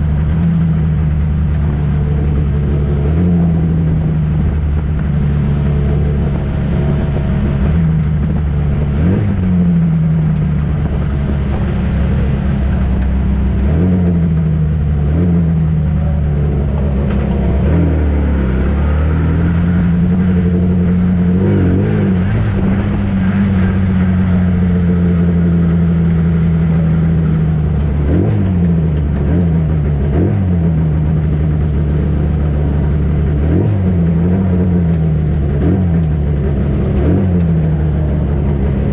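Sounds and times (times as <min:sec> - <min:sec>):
racing car engine at speed: 0:00.0 - 0:38.9.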